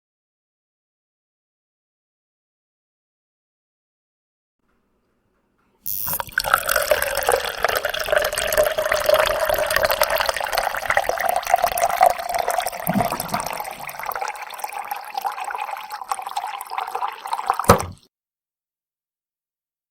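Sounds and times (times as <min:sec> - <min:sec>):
water pouring from jug: 0:05.9 - 0:18.0
brief thud: 0:17.7 - 0:18.0.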